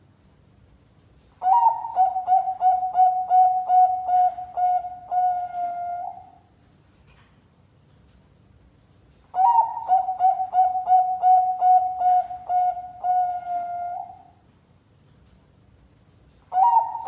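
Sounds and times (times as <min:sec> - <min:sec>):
dove cooing: 0:01.4 - 0:06.4, 0:09.4 - 0:14.4, 0:16.5 - 0:17.0.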